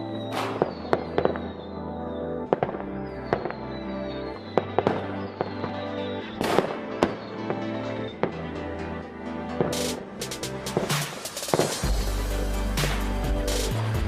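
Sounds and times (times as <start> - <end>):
music with sustained notes: 0.0 - 14.0
fireworks bangs and crackles: 0.2 - 1.8, 2.4 - 8.6, 9.5 - 12.1.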